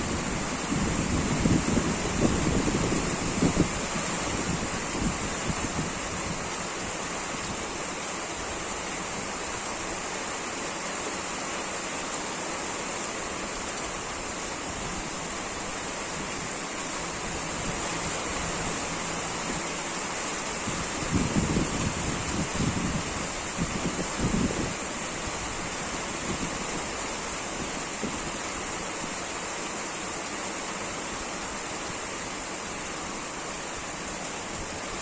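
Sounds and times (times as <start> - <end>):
low rumbling wind gusts: 0.0 - 7.8, 14.6 - 28.9
steady rain: 0.0 - 35.0.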